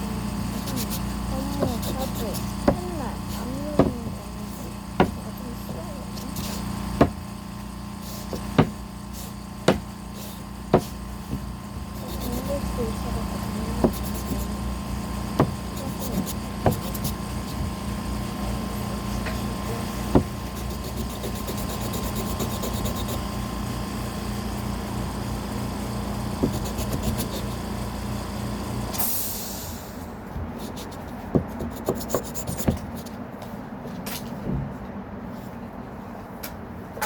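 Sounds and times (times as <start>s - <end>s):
steady background hum: 0.0s - 37.0s
sandpaper rubbing on wood: 0.4s - 7.2s, 8.0s - 14.6s, 15.4s - 17.7s, 20.0s - 23.3s, 26.4s - 27.6s, 30.5s - 33.2s
wood knocks: 3.8s - 4.2s, 5.0s - 5.2s, 8.4s - 8.8s, 15.4s - 15.6s.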